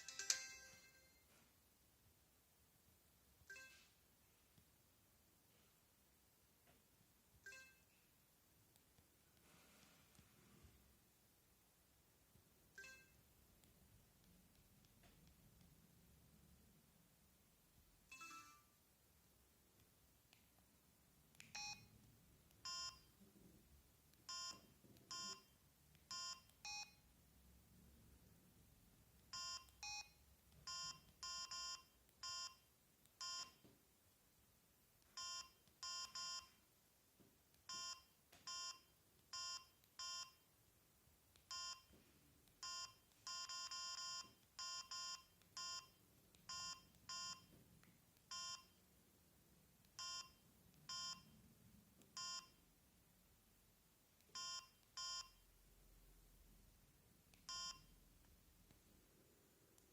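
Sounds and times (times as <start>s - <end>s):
mobile phone key beeps: 3.5s - 3.9s, 7.4s - 7.9s, 12.8s - 13.2s, 18.1s - 18.6s, 21.4s - 21.9s, 22.6s - 23.2s, 24.3s - 27.0s, 29.3s - 32.6s, 33.2s - 33.6s, 35.2s - 36.6s, 37.7s - 40.4s, 41.5s - 41.9s, 42.6s - 47.5s, 48.2s - 48.8s, 49.9s - 51.3s, 52.1s - 52.6s, 54.3s - 55.5s, 57.4s - 58.0s.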